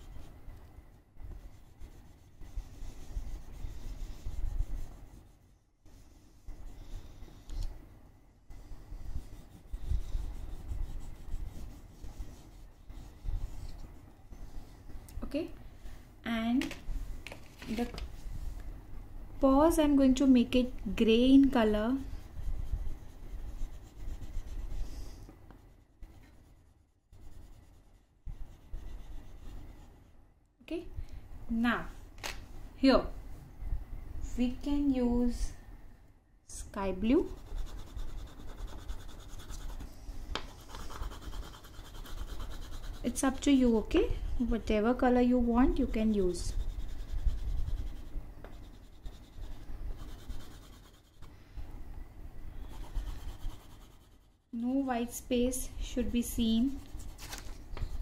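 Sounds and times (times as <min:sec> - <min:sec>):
crayon scribbling on paper: 0:01.4 - 0:05.4, 0:09.0 - 0:13.7, 0:22.1 - 0:25.1, 0:26.0 - 0:29.9, 0:37.2 - 0:39.9, 0:40.5 - 0:44.9, 0:45.6 - 0:51.3, 0:52.7 - 0:54.3.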